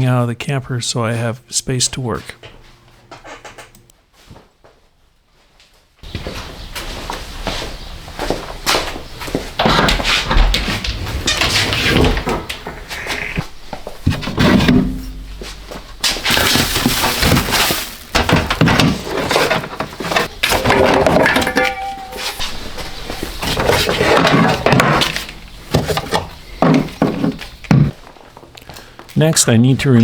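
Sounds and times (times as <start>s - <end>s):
gear and wooden items clattering: 13.7s - 28.5s.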